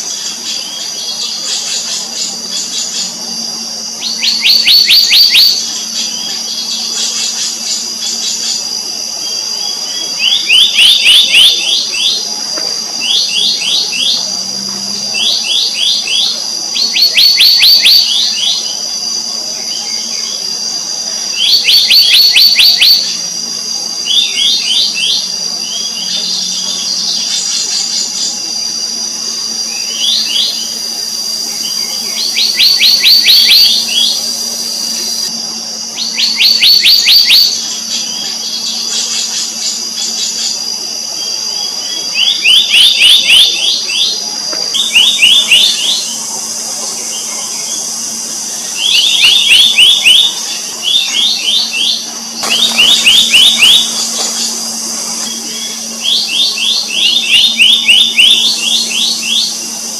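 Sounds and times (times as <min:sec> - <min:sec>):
steady high-pitched hum: 0:00.0 - 0:59.9
bird calling ringing high notes: 0:44.8 - 0:59.8.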